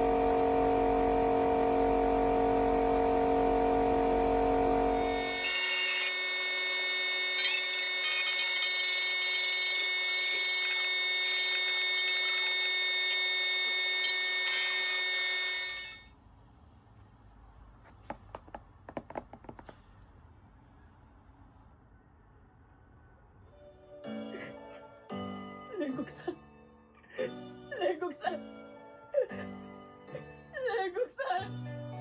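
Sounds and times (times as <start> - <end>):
small electric motor whirring: 0.0 - 16.1.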